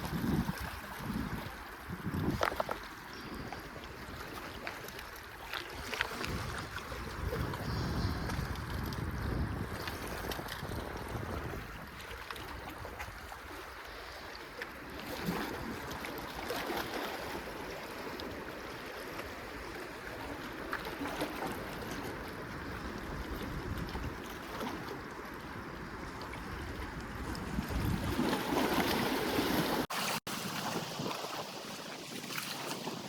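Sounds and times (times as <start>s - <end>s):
wind noise: 0.0s - 3.5s, 5.8s - 13.5s, 25.8s - 29.8s
water noise: 0.0s - 33.0s.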